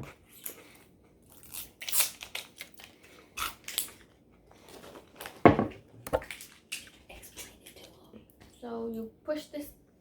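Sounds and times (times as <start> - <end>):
plastic wrapping crinkling and tearing: 1.3 - 5.4.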